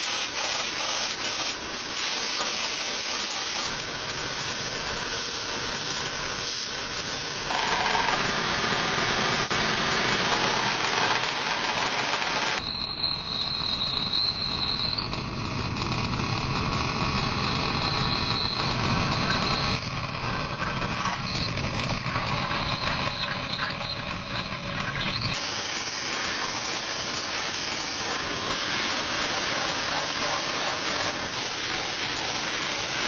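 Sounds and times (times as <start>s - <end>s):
power tool motor running: 0.0s - 12.6s, 17.3s - 33.0s
high whine: 0.0s - 33.0s.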